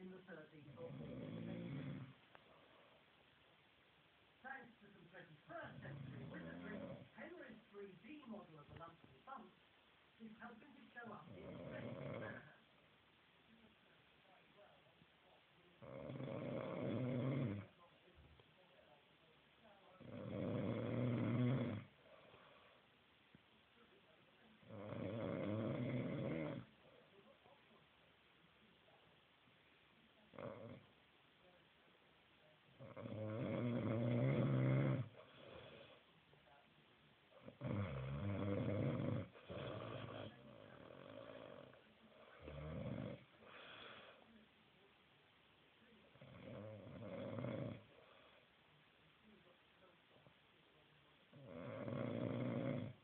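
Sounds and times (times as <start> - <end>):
man snoring: 0.9 - 2.2, 11.4 - 12.4, 15.8 - 17.7, 20.0 - 21.9, 24.6 - 26.7, 30.4 - 30.8, 32.8 - 36.0, 37.5 - 41.8, 42.4 - 44.0, 46.2 - 47.9, 51.4 - 53.0
soft breath: 2.1 - 3.2, 22.0 - 23.0, 35.1 - 36.2, 43.3 - 44.5.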